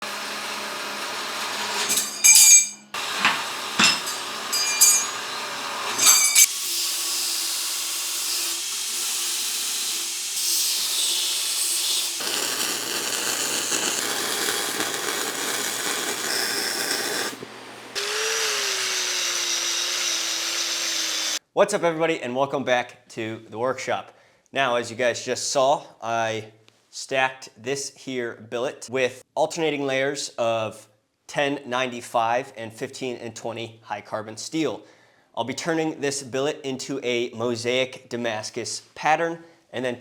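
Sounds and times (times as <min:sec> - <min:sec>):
power tool running on steel: 0:00.0 - 0:21.4
steel pieces clinking: 0:01.8 - 0:06.5.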